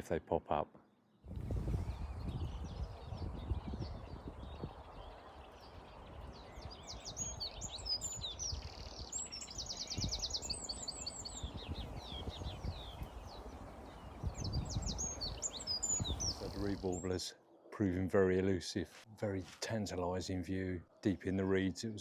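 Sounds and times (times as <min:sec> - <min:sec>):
wind rumble on microphone: 0:01.2 - 0:16.8
reed warbler singing: 0:01.4 - 0:17.2.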